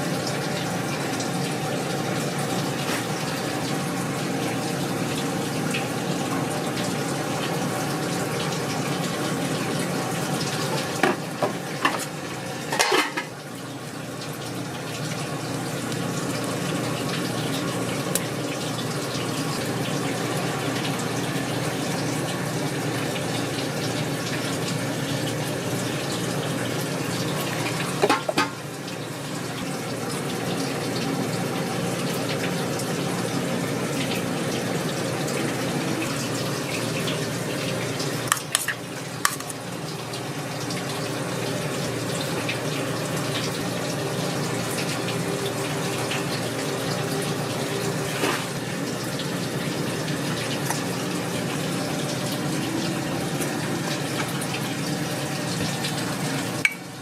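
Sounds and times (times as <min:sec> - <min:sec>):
rushing kitchen noise: 0:08.9 - 0:13.6, 0:24.6 - 0:29.2, 0:31.1 - 0:40.1, 0:41.0 - 0:57.0
cookware clinking: 0:12.7 - 0:13.3, 0:28.0 - 0:28.6.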